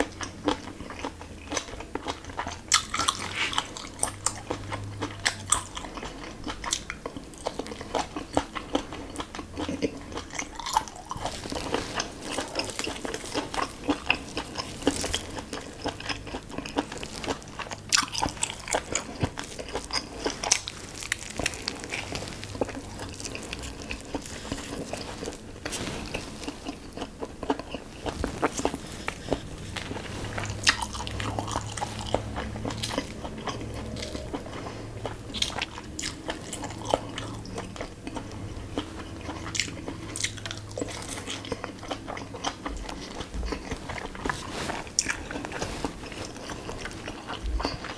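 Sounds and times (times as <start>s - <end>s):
person chewing crunchy food: 0.0s - 47.9s.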